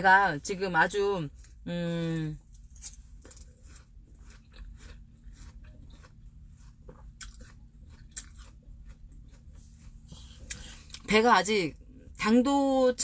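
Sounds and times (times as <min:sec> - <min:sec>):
person crunching a pear: 0:00.9 - 0:11.2.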